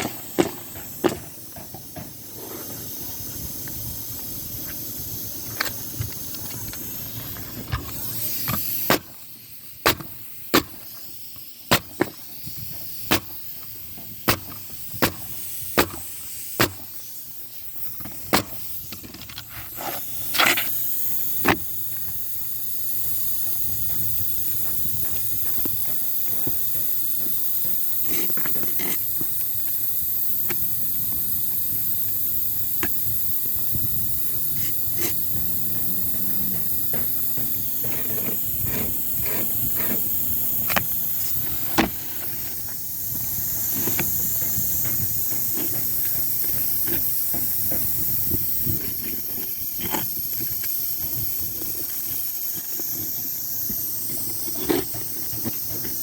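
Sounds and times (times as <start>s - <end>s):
steady hiss: 0.0s - 56.0s
nails being hammered: 9.8s - 10.9s, 11.7s - 12.2s, 14.2s - 17.0s.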